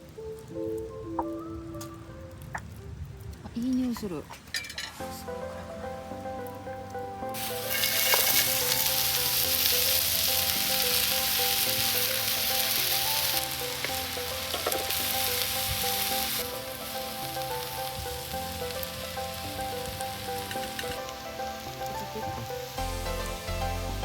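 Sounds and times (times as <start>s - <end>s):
food sizzling in a pan: 7.3s - 24.0s.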